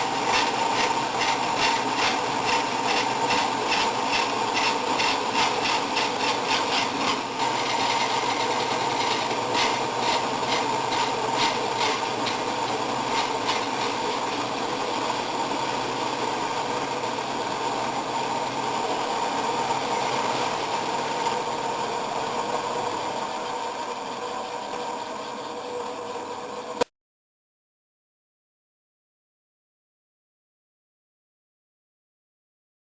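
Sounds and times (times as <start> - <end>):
band saw cutting wood: 0.0 - 17.3.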